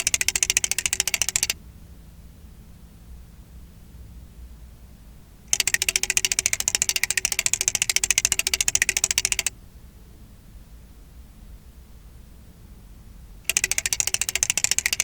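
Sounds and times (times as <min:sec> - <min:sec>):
flip dot display clicking: 0:00.0 - 0:01.6, 0:05.5 - 0:09.5, 0:13.5 - 0:15.0.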